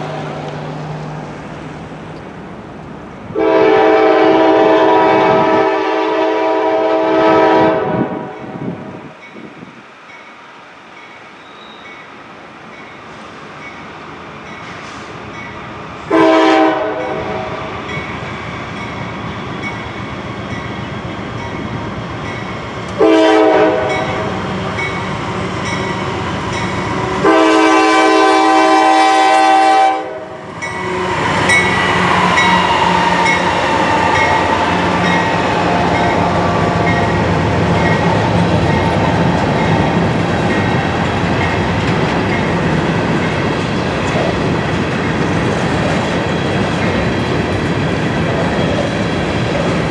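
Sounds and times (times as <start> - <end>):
locomotive air horn blasts: 3.4 - 8.6, 16.1 - 17.6, 23.0 - 24.4, 25.9 - 37.4
train wheels clicking over rail joints: 30.6 - 49.9.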